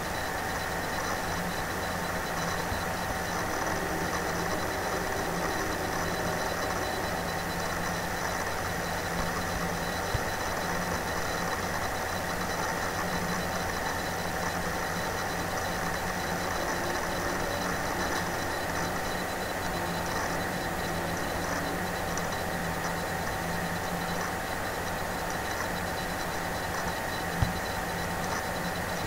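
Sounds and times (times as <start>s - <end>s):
low hum: 0.0s - 29.0s.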